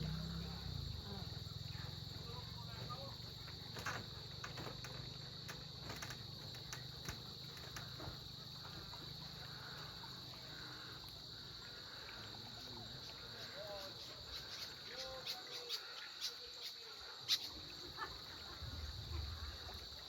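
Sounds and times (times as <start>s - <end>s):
insects trilling: 0.0s - 20.0s.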